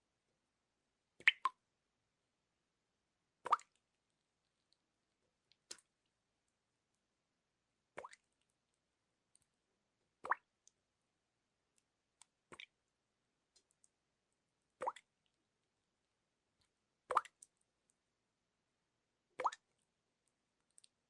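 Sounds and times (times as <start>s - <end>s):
water drops plopping: 1.2s - 1.6s, 3.5s - 3.7s.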